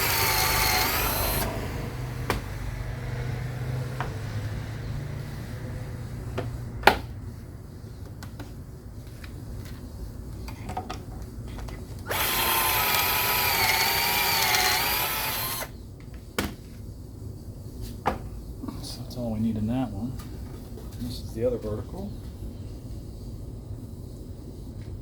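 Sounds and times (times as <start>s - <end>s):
drill whining into wood: 0.0s - 2.2s, 12.0s - 15.7s.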